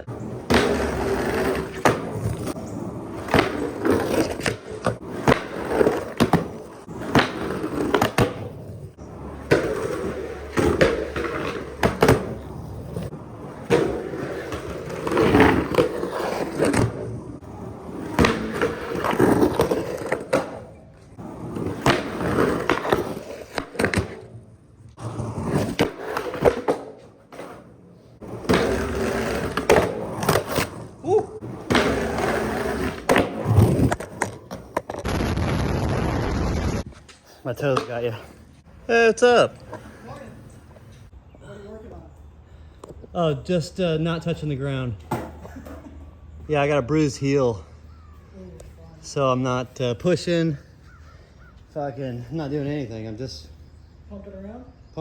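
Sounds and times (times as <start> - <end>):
skateboard clicks and knocks: 0.0 - 35.1
skateboard wheels rolling: 0.0 - 41.1.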